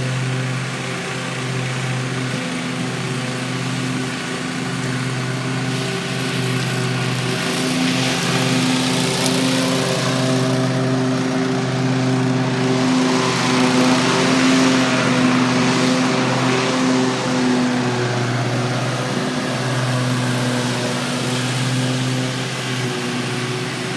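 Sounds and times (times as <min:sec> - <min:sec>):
mower engine running: 0:00.0 - 0:23.9.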